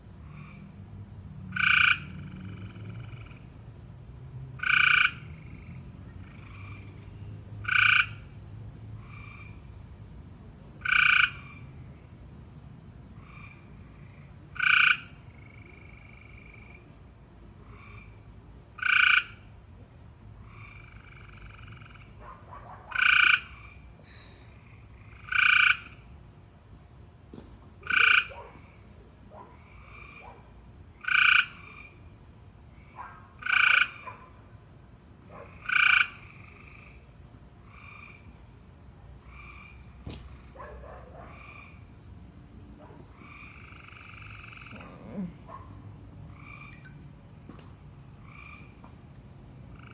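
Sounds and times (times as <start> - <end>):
frog calling: 1.5 - 3.5, 4.6 - 6.9, 7.6 - 8.3, 10.8 - 11.6, 13.2 - 17.0, 18.8 - 19.5, 20.4 - 22.2, 22.9 - 23.8, 24.6 - 26.1, 27.8 - 28.4, 29.7 - 34.2, 35.4 - 45.6, 46.2 - 47.6, 48.2 - 48.9.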